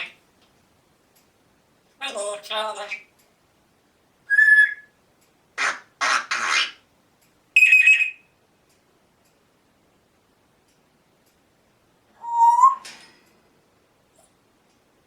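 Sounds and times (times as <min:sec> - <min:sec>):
parrot whistling: 0:04.3 - 0:05.0, 0:07.6 - 0:08.2, 0:12.2 - 0:12.9
parrot raspy fart noises: 0:05.6 - 0:06.8.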